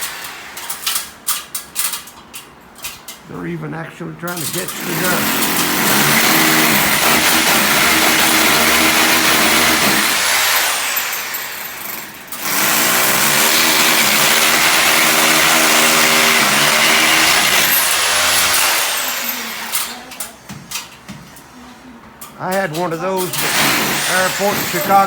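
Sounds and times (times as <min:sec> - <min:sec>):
electric drill boring into wall: 0:04.6 - 0:20.0, 0:23.3 - 0:25.0.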